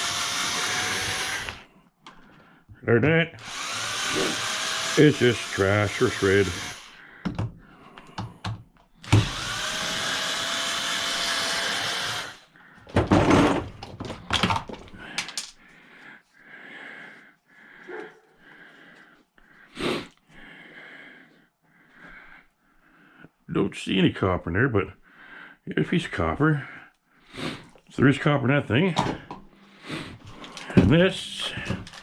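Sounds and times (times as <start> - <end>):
power tool running: 0.0 - 1.7, 3.4 - 7.0, 9.0 - 12.5
parts clattering and knocking: 7.2 - 9.5, 12.8 - 15.6, 28.9 - 29.5, 30.2 - 32.0.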